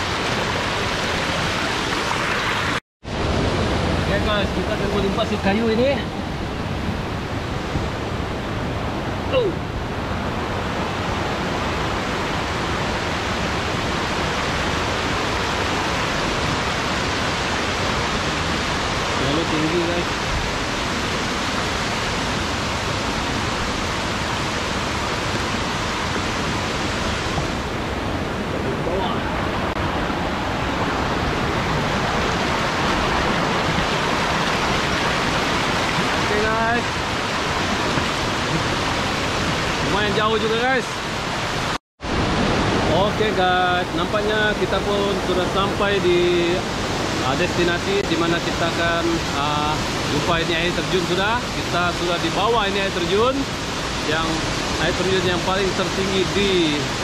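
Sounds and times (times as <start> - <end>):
river water rushing over rocks: 0.0 - 57.0
falling voice-like sound: 9.3 - 9.7.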